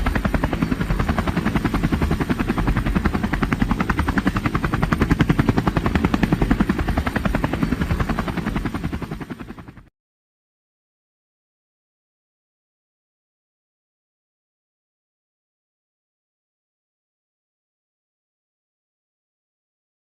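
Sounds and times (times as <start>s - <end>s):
helicopter rotor chopping: 0.0s - 9.9s.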